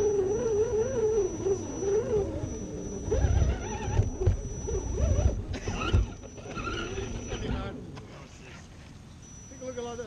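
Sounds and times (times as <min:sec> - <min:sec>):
rc car electric motor whining: 0:00.0 - 0:07.7.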